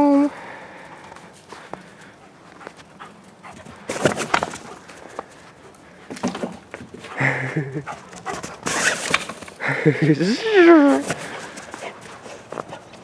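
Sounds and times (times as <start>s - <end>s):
dog panting: 0.9s - 6.0s, 7.0s - 8.7s, 11.0s - 13.0s
dog scuffling: 1.1s - 7.2s, 7.8s - 9.6s, 10.9s - 13.0s.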